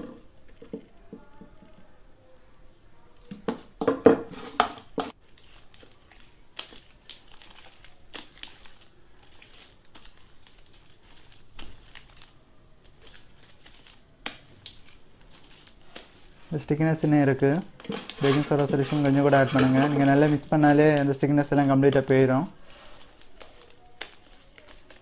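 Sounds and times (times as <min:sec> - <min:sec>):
slime squishing and popping: 0:12.9 - 0:16.2.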